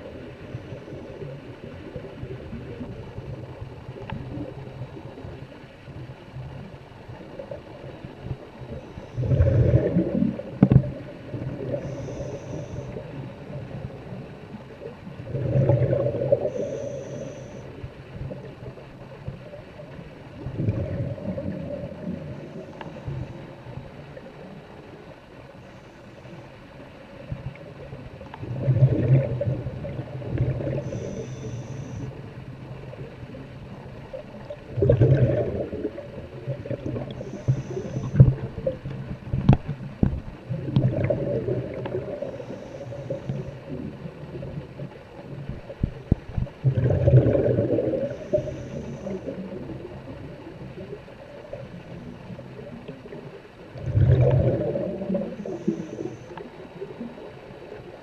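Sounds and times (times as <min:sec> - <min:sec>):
faint hiss: 0:00.0 - 0:34.6, 0:35.6 - 0:46.6, 0:47.6 - 0:53.7, 0:54.5 - 0:58.0
underwater breath bubbling: 0:08.7 - 0:13.9, 0:15.3 - 0:17.7, 0:28.4 - 0:32.2, 0:34.7 - 0:38.8, 0:40.5 - 0:44.4, 0:45.5 - 0:50.1, 0:53.8 - 0:56.9.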